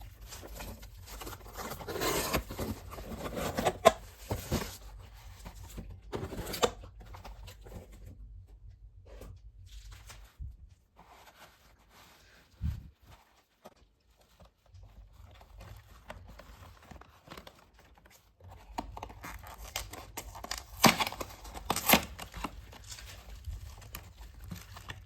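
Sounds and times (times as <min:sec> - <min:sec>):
foil wrapper tearing and crinkling: 0:18.7 - 0:25.0.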